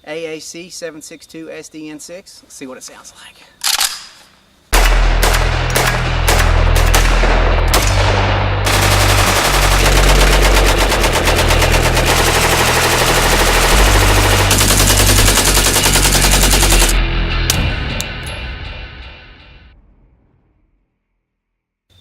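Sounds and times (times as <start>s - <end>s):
suppressed rifle firing: 4.8s - 15.3s
background music: 4.8s - 20.0s.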